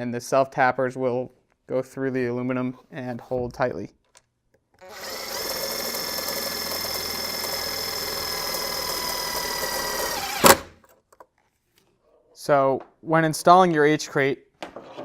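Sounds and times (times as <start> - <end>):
drill click: 4.8 - 10.8
power drill whining: 4.8 - 10.8.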